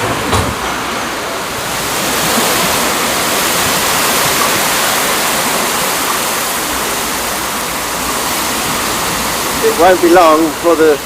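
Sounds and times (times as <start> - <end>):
strong wind blowing: 0.0 - 11.0.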